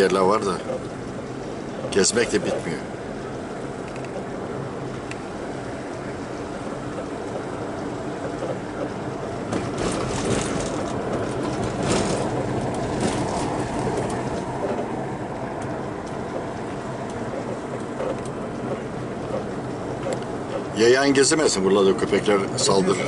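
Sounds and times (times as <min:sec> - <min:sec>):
car engine hum: 0:00.0 - 0:23.0
road noise: 0:00.0 - 0:23.0
car rattling and knocking: 0:06.5 - 0:23.0.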